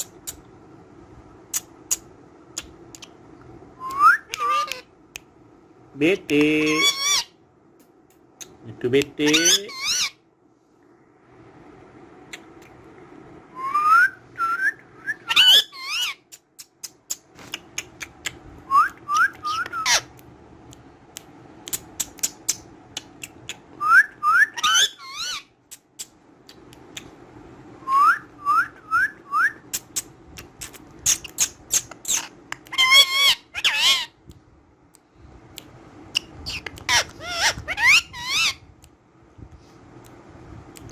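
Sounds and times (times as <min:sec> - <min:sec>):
parrot shrill calls: 0:03.9 - 0:04.9, 0:06.7 - 0:07.4, 0:09.2 - 0:10.2, 0:13.6 - 0:16.2, 0:18.7 - 0:20.1, 0:23.8 - 0:25.5, 0:31.2 - 0:34.2, 0:36.5 - 0:38.6
parrot whistling rising notes: 0:13.5 - 0:16.1, 0:27.8 - 0:29.6, 0:36.5 - 0:38.6.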